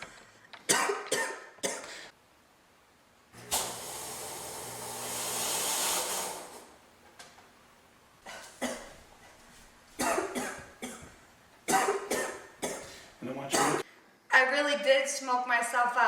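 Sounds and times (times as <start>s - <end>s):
woman coughing: 0.7s - 1.9s, 8.3s - 9.0s, 10.0s - 11.1s, 11.7s - 12.9s, 13.5s - 13.9s
fog machine hissing: 3.4s - 6.9s.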